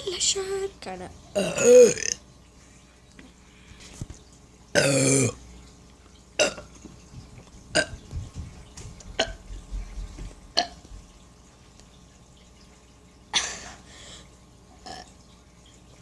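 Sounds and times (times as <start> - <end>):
loud pitched burp: 1.4 - 2.2, 4.7 - 5.4, 6.4 - 6.7, 10.6 - 10.8, 14.8 - 15.1.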